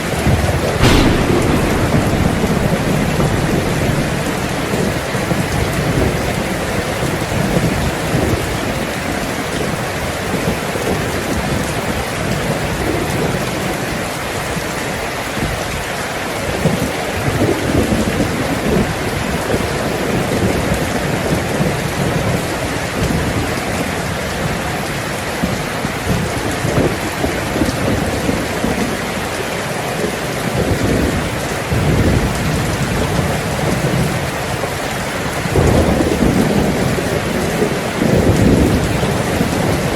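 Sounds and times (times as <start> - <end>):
thunder rumbling: 0.0 - 9.0, 31.7 - 39.9
heavy rain on a tin roof: 0.0 - 39.9.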